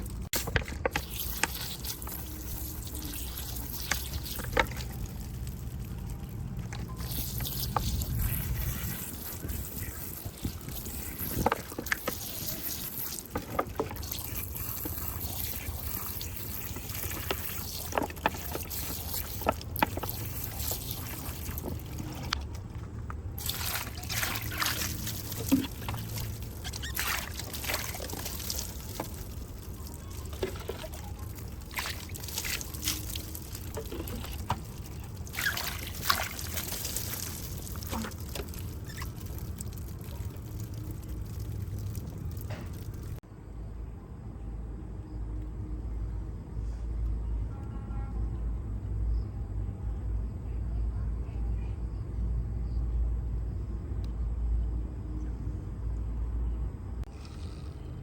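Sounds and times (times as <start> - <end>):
water trickling: 0.0 - 43.2.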